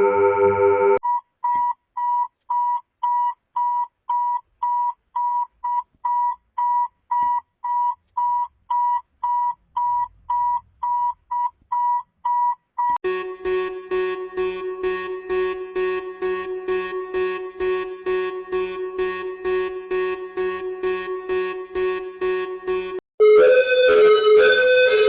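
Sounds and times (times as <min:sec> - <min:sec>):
harsh buzzing alarm tone: 0:00.0 - 0:01.0, 0:13.0 - 0:25.0.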